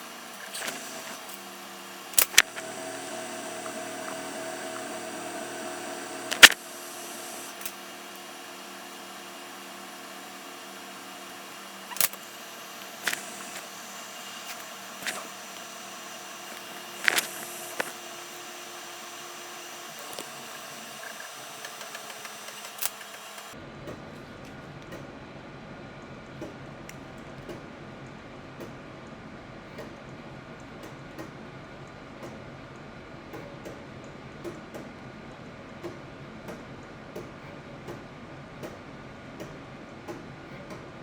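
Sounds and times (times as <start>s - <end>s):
steady mechanical hum: 0.0s - 41.0s
sharp clicks: 2.2s - 7.8s.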